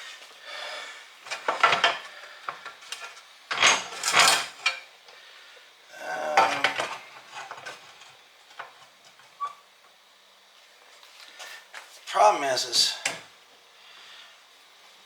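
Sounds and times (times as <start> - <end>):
steel tools clanking and scraping: 1.3 - 4.8, 6.3 - 9.6.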